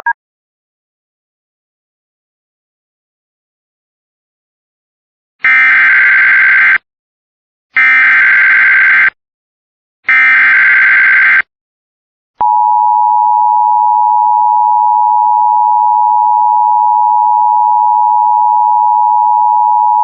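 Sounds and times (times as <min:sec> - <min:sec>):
steady attention tone: 0:12.4 - 0:20.0.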